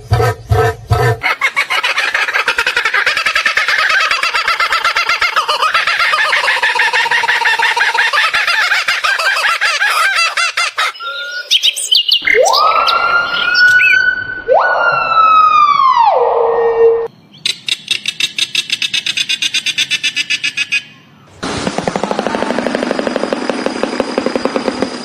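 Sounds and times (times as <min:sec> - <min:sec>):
flock of birds chirping: 0:00.0 - 0:13.9
bird siren-like whistles: 0:10.9 - 0:17.1
bird clicking trill: 0:17.4 - 0:20.8.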